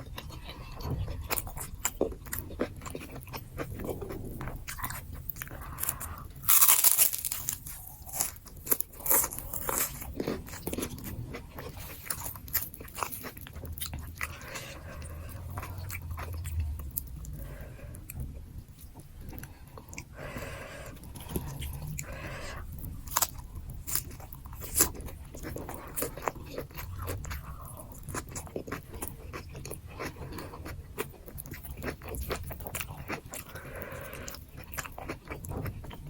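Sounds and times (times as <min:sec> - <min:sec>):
chewing with small crackles: 0:00.0 - 0:36.0
loud crunchy bite: 0:05.8 - 0:14.5.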